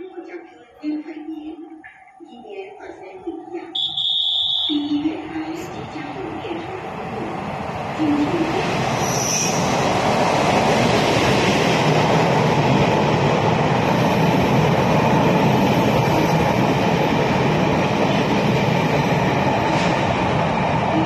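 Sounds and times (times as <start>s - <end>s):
train wheels on rails passing: 4.9s - 21.0s.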